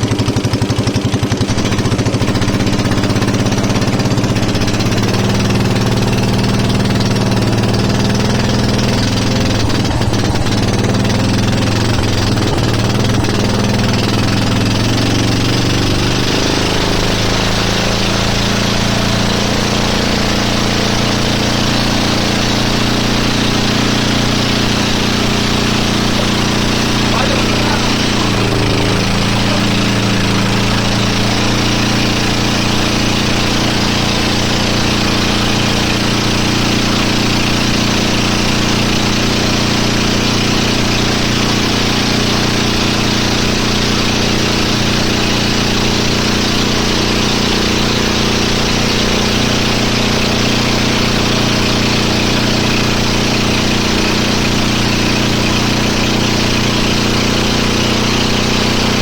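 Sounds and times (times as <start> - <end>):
motorboat engine running: 0.0 - 59.0
dense rushing noise: 7.2 - 39.2.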